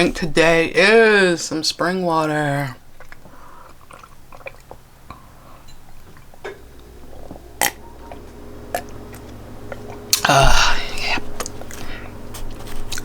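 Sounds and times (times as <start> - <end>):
person swallowing water: 3.0 - 6.4, 9.7 - 11.7.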